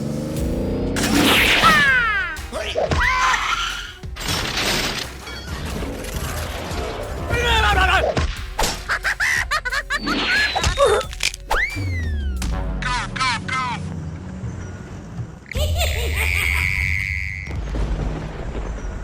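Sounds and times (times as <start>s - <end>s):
background music: 0.0s - 17.7s
sharp impacts and clicks: 0.3s - 3.2s.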